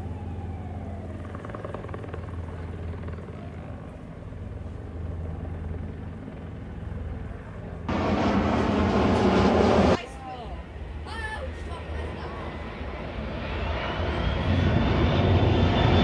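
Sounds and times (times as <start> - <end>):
distant helicopter hum: 0.0 - 16.0
loud rush of noise: 7.9 - 10.0.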